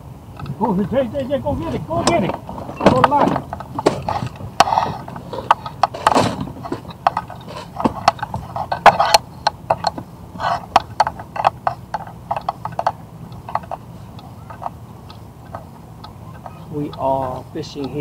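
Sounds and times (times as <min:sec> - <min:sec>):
fishing tackle clicking and knocking: 0:02.9 - 0:17.1.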